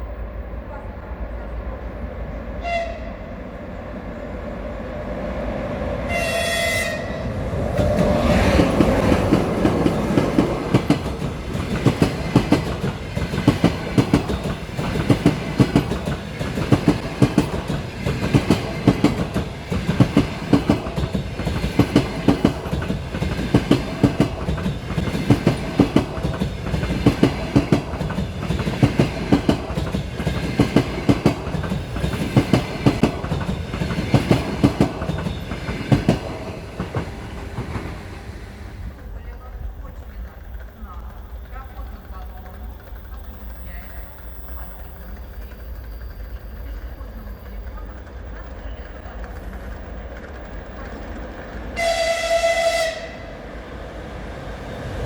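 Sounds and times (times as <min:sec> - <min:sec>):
train horn blast: 0:02.6 - 0:03.4, 0:06.1 - 0:07.4, 0:51.8 - 0:53.5
train wheels clattering: 0:07.3 - 0:52.7.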